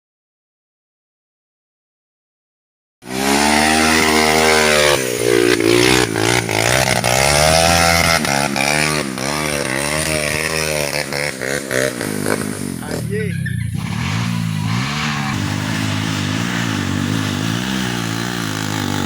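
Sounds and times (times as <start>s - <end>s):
small engine revving: 3.0s - 19.0s.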